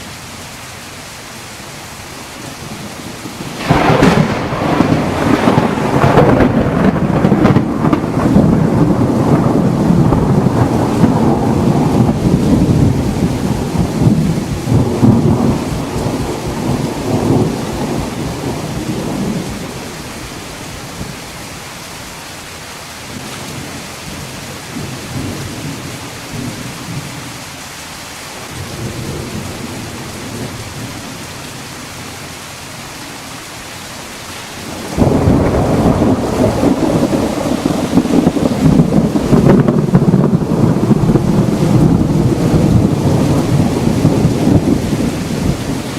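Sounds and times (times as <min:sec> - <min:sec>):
steady rain: 0:00.0 - 0:45.9
thunder rolling: 0:02.6 - 0:21.2, 0:34.6 - 0:45.9.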